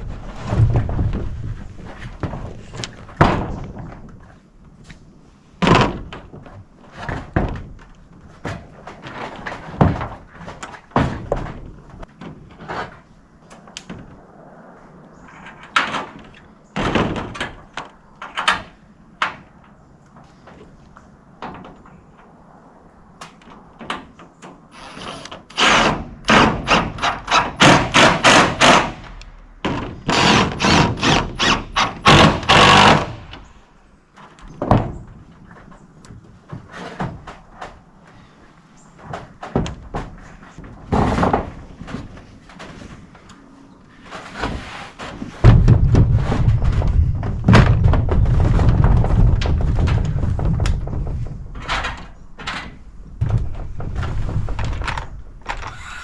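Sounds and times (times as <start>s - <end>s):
hammering on roof panels: 2.2s - 4.0s, 5.6s - 7.8s, 8.4s - 12.9s, 15.8s - 19.6s, 23.7s - 33.6s, 39.0s - 42.8s, 44.1s - 55.7s.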